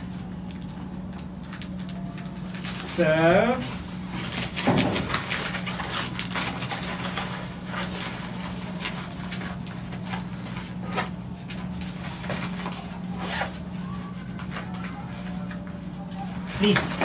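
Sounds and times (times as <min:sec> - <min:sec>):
steady low hum: 0:00.0 - 0:17.0
bag rustling and clicking: 0:03.6 - 0:17.0.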